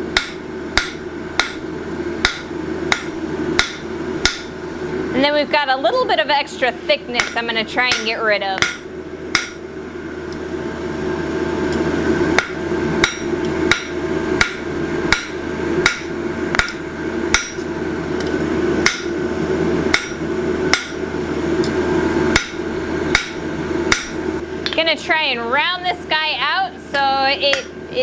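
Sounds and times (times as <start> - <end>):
steady rushing hum: 0.0 - 28.0
hammer striking steel on anvil: 0.1 - 1.6, 2.2 - 4.6, 7.2 - 9.6, 12.4 - 19.2, 19.9 - 21.0, 21.6 - 24.2, 27.5 - 27.8.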